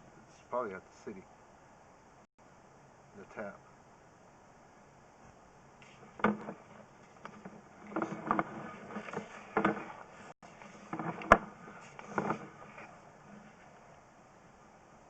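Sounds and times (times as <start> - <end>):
knocks and clattering: 5.8 - 13.6.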